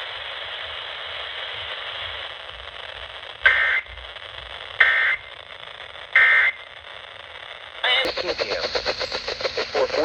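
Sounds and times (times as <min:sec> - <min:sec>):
radio hiss: 0:00.0 - 0:10.0
buzzy data bursts: 0:08.0 - 0:10.0.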